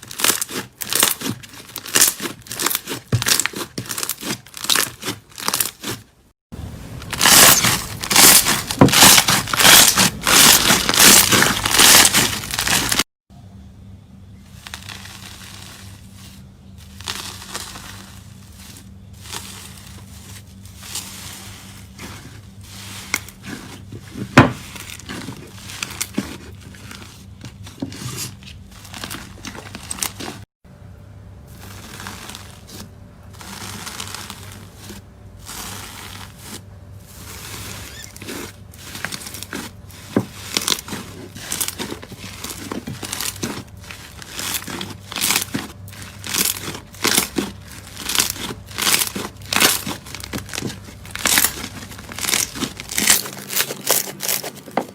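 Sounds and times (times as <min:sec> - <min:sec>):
faint low hum: 0:13.3 - 0:53.0.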